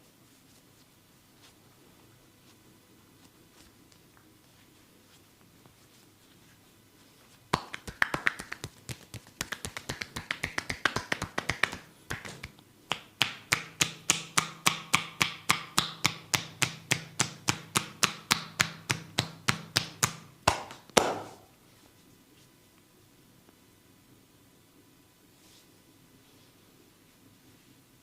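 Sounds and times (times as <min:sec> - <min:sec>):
hands striking skin: 0:07.5 - 0:21.4.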